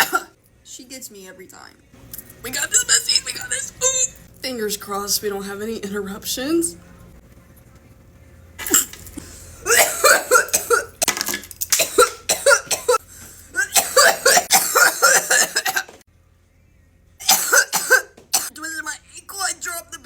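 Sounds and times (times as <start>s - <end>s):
person coughing hard: 0.0s - 0.3s, 8.6s - 9.0s, 9.6s - 11.1s, 11.7s - 16.0s, 17.2s - 18.5s.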